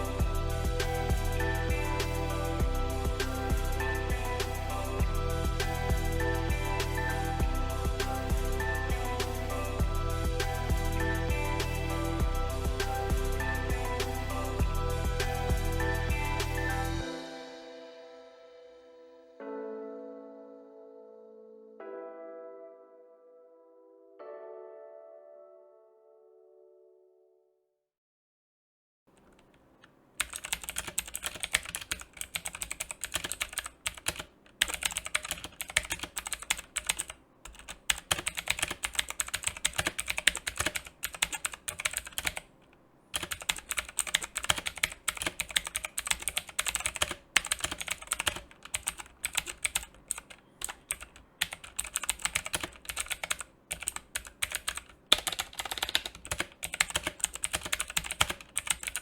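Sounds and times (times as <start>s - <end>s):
clicky mechanical keyboard typing: 30.2s - 42.5s, 43.1s - 59.0s.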